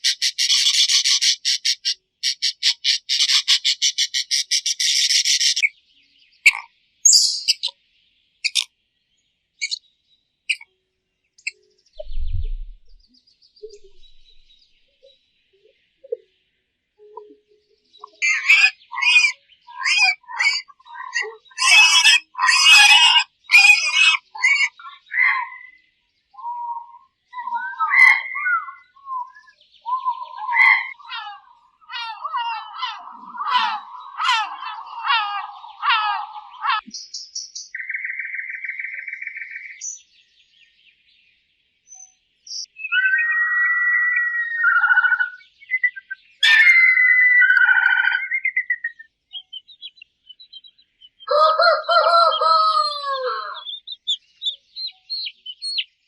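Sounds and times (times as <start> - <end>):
bird chirps and squawks: 0.0 - 5.7, 6.4 - 7.8, 8.4 - 8.7, 9.6 - 9.8, 10.5 - 10.7, 18.0 - 25.8, 26.4 - 36.9, 42.6 - 50.0, 51.2 - 55.9.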